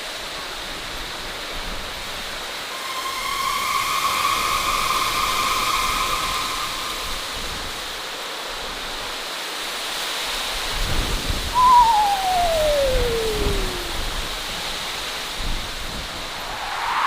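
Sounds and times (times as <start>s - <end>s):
eerie wavering call: 2.7s - 7.9s, 11.5s - 14.3s.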